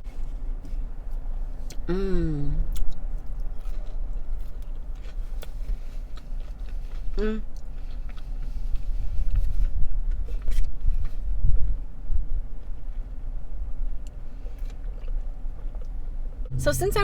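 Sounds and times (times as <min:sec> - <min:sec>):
person humming: 0:01.9 - 0:02.6
chewing and biting mouth sounds: 0:02.6 - 0:11.9, 0:13.8 - 0:16.6
steady low rumble: 0:16.3 - 0:17.0.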